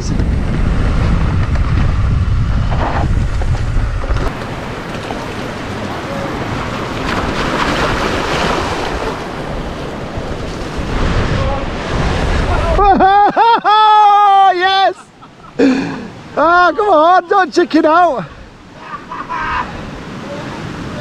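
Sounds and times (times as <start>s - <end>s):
wind buffeting microphone: 0.0s - 13.1s.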